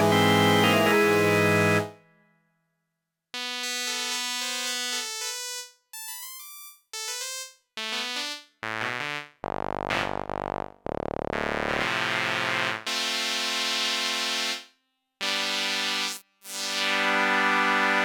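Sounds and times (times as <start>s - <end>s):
buzzy synth notes and chords: 0.0s - 1.9s, 9.4s - 12.3s.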